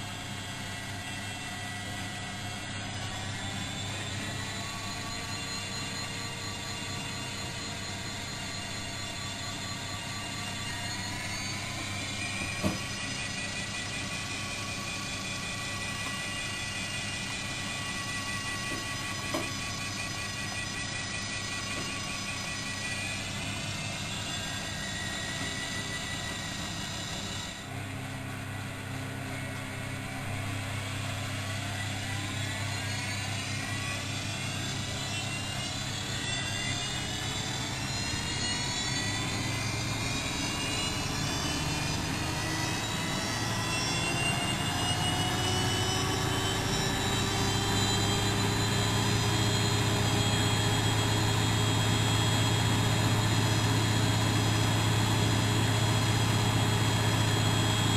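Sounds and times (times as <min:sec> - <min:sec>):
washing machine spin motor whine: 0:00.0 - 0:57.9.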